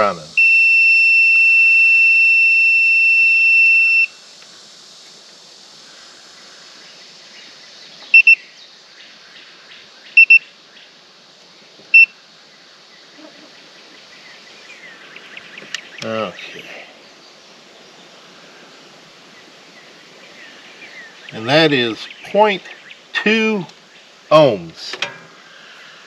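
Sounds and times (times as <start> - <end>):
multimeter continuous beep: 0.0 - 4.2, 8.1 - 8.4, 10.2 - 10.4, 11.9 - 12.1
multimeter short double beeps: 0.4 - 4.1, 8.1 - 8.4, 10.2 - 10.4, 11.9 - 12.1.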